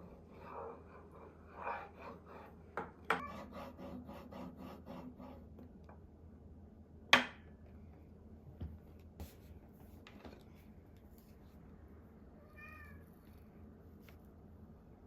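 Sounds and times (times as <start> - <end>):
cat meowing quietly: 12.4 - 13.2.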